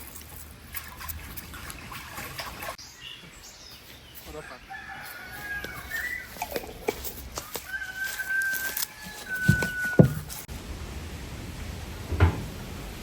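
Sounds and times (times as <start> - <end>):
rooster crowing: 4.4 - 6.3, 7.5 - 10.4
scattered knocks: 9.5 - 10.4.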